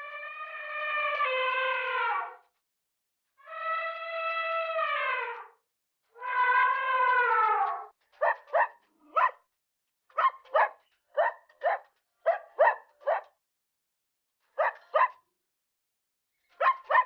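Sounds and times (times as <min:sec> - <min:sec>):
dog barking: 0:08.2 - 0:09.5, 0:10.2 - 0:13.4, 0:14.6 - 0:15.2, 0:16.6 - 0:17.0.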